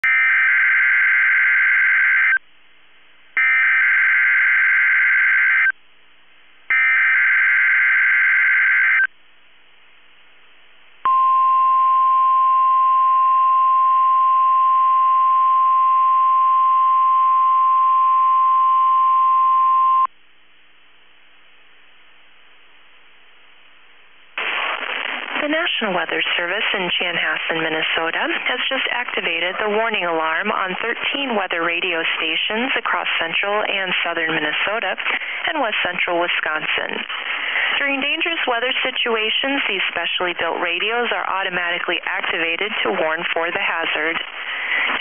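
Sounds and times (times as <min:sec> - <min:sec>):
faint broadcast hiss: 0:02.4 - 0:03.4, 0:05.8 - 0:06.7, 0:09.1 - 0:11.1, 0:20.0 - 0:45.0
steady warning alarm tone: 0:03.4 - 0:05.8, 0:06.7 - 0:09.1.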